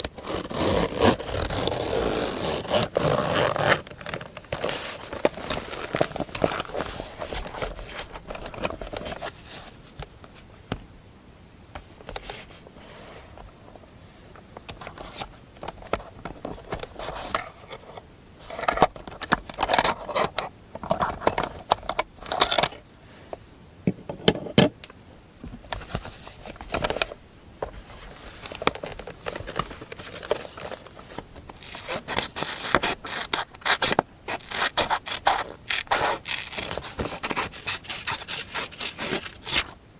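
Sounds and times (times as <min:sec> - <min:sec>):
paper scratching and rustling: 0:27.7 - 0:39.8.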